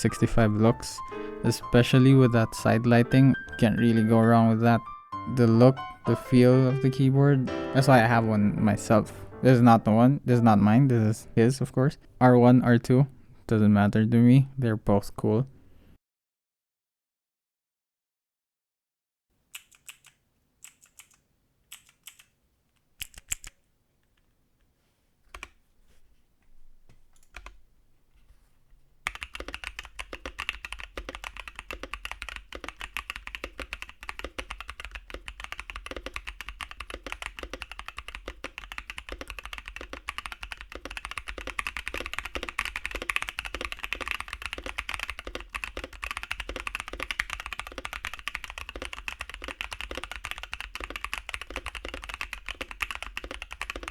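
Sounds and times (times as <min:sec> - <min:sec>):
mechanical keyboard typing: 0:19.5 - 0:22.3, 0:23.0 - 0:23.6, 0:25.3 - 0:25.6, 0:27.2 - 0:27.6, 0:29.0 - 0:53.9.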